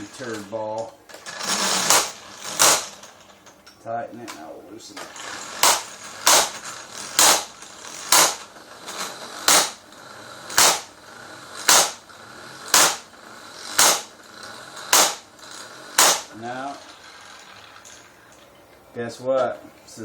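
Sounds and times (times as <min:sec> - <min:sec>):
impact wrench knocking: 0:05.1 - 0:09.8, 0:10.5 - 0:10.9, 0:11.6 - 0:12.0, 0:12.7 - 0:15.3, 0:16.0 - 0:16.3.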